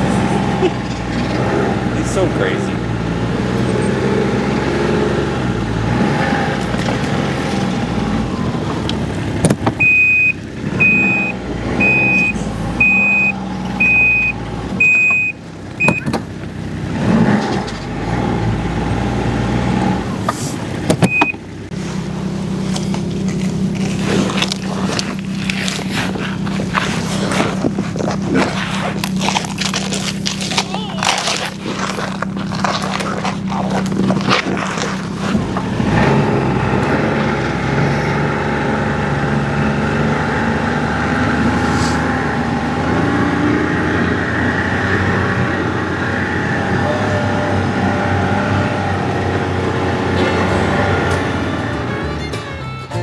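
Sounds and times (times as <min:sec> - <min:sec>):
engine running steadily: 0:00.0 - 0:53.0
high-pitched warning beeps: 0:09.8 - 0:16.1.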